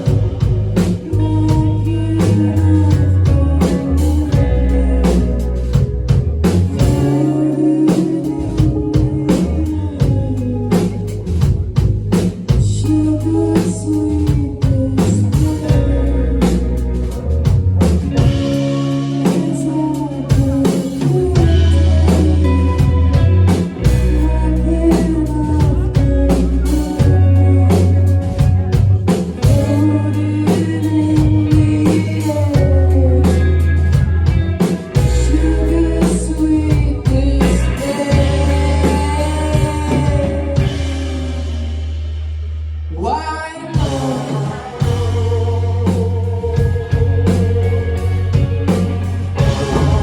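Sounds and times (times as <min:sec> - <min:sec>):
woman singing: 0:00.0 - 0:41.8, 0:42.9 - 0:50.0
bass guitar: 0:00.0 - 0:50.0
electric guitar: 0:00.0 - 0:50.0
live rock band playing: 0:00.0 - 0:50.0
drum kit hits: 0:46.9 - 0:50.0.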